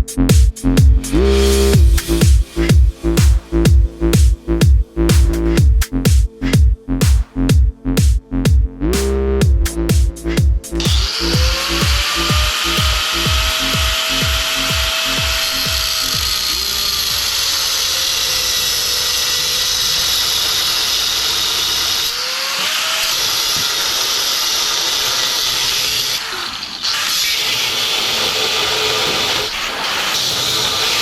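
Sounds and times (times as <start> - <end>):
falling bass thumps: 0.0 - 16.8
long sweeping synth tones: 8.7 - 17.9.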